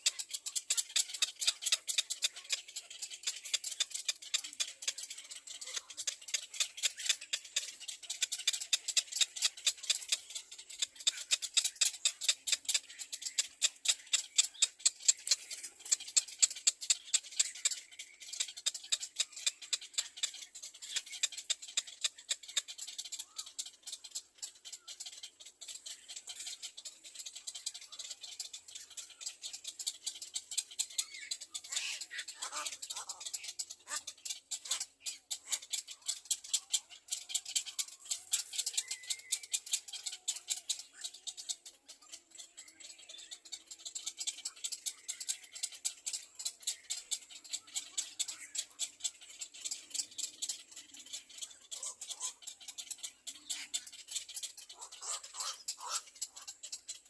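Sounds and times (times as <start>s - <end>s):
nestlings begging calls: 0.0s - 57.0s.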